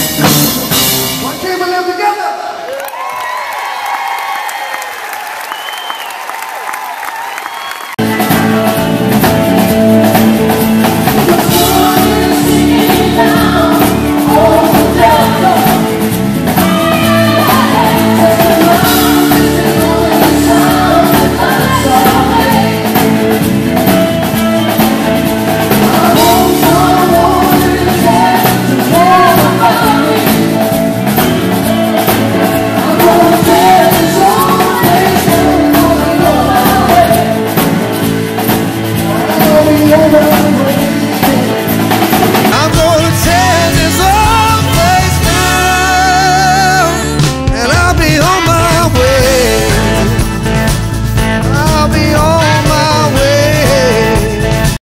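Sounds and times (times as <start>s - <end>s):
live band music: 0.0s - 2.9s, 6.2s - 54.8s
person singing: 11.1s - 23.5s, 25.4s - 38.0s, 38.9s - 50.4s, 51.4s - 54.8s.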